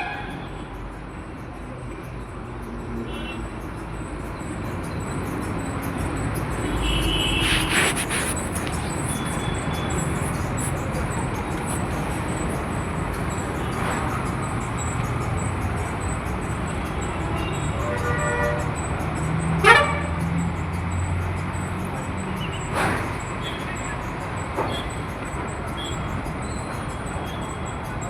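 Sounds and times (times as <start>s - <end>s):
road traffic passing: 0.0s - 28.0s
vehicle horn: 6.6s - 8.2s, 19.6s - 20.1s.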